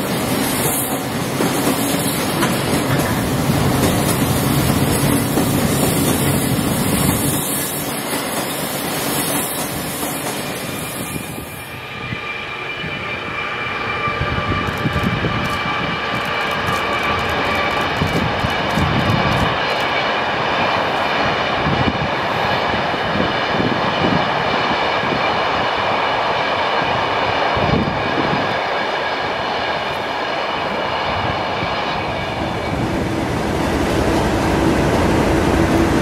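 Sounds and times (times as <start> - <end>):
train wheels clattering on rails: 0.0 - 11.4, 14.7 - 30.8
high whine: 10.7 - 22.1
locomotive engine: 12.5 - 21.1.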